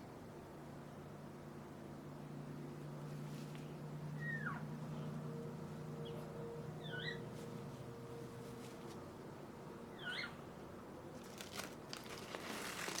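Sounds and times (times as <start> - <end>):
parrot chirping: 6.8 - 7.2.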